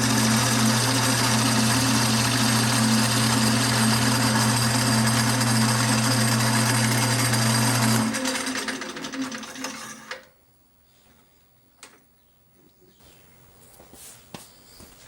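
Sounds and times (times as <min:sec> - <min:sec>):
wood lathe motor humming: 0:00.0 - 0:10.2.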